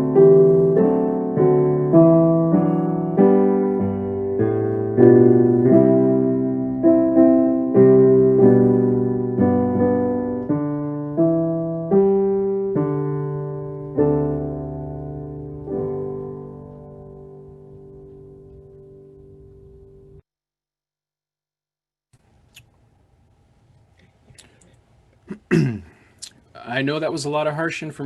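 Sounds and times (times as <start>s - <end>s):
slow solo piano chords: 0.0s - 20.2s.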